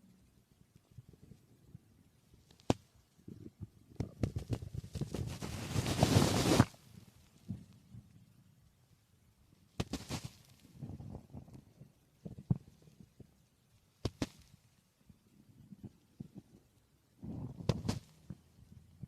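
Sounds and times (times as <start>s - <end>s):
stomach gurgling: 3.2s - 6.7s, 10.6s - 13.4s, 15.4s - 19.0s.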